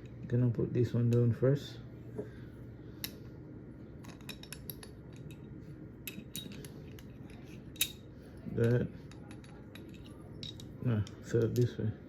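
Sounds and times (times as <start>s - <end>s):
metal hardware clicks and clinks: 4.0s - 11.9s.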